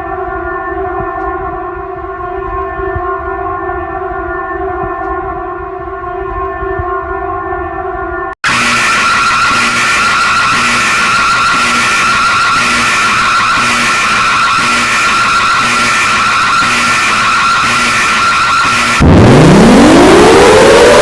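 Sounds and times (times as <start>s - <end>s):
electronic emergency alarm: 8.4s - 21.0s
siren winding up: 8.4s - 21.0s.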